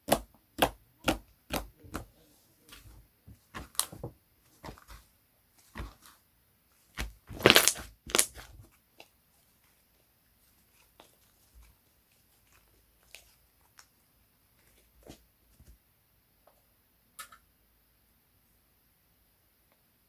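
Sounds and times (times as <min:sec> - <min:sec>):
slime squishing by hand: 0:00.0 - 0:06.2, 0:06.8 - 0:09.2.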